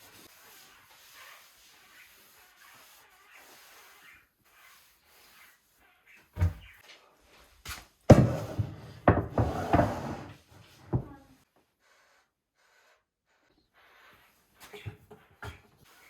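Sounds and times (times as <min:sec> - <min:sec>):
hard objects knocking: 0:08.1 - 0:10.3
clattering and rubbing: 0:08.1 - 0:11.2.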